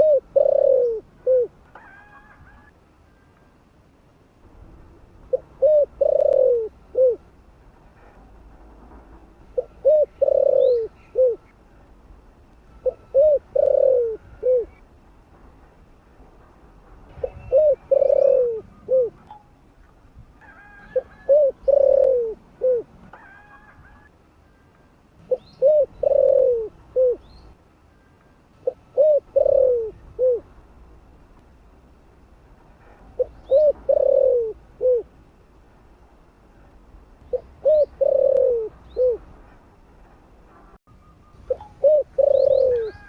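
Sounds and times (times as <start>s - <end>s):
dove cooing: 0.0s - 2.4s, 5.3s - 7.2s, 9.6s - 11.5s, 12.8s - 14.8s, 17.2s - 19.2s, 20.5s - 24.1s, 25.2s - 27.3s, 28.6s - 30.5s, 33.2s - 35.1s, 37.3s - 39.3s, 41.5s - 43.0s.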